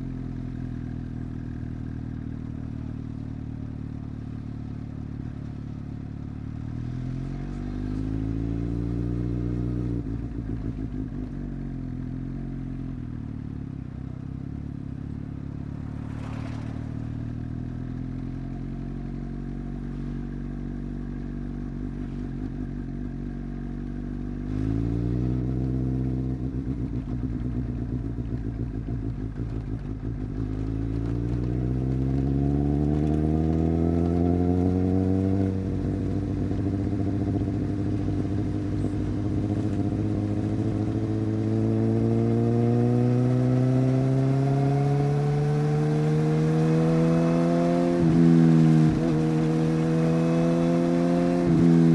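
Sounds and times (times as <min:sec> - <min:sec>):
motorcycle engine accelerating hard: 0:03.9 - 0:13.7, 0:14.6 - 0:51.9.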